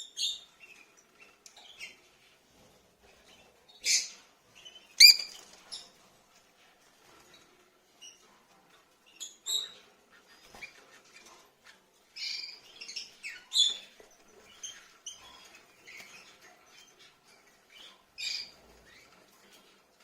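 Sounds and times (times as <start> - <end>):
lovebirds chirping: 3.8 - 5.6.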